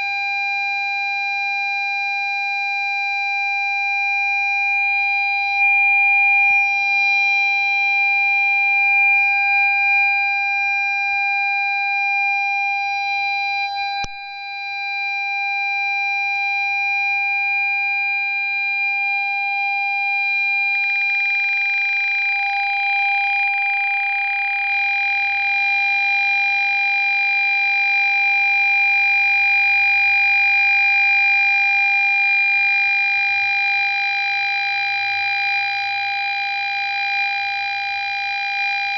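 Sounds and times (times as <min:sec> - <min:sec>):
parking sensor buzzer continuous tone: 0:00.0 - 0:38.9
click: 0:14.0 - 0:14.2.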